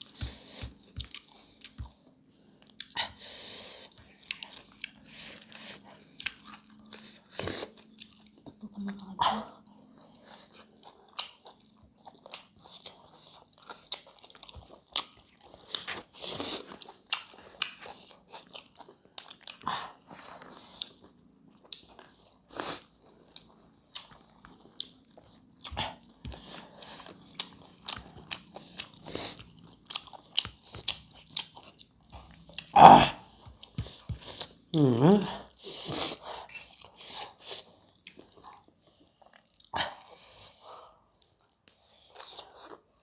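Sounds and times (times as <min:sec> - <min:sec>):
wet chewing clicks: 0:22.9 - 0:35.6.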